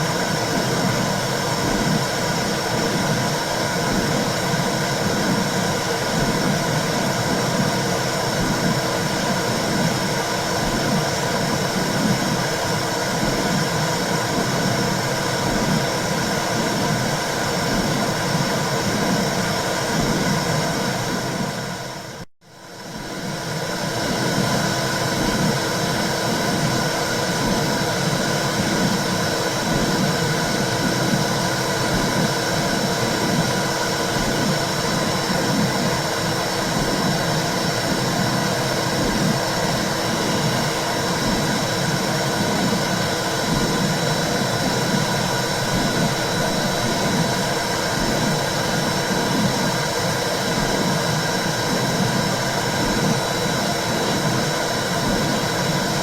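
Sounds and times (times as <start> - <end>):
soft heartbeat pulse: 27.4 - 36.1, 36.7 - 55.8.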